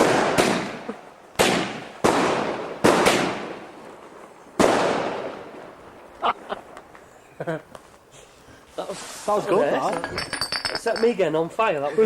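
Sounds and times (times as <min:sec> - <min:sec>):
firework bangs: 0:00.0 - 0:07.0.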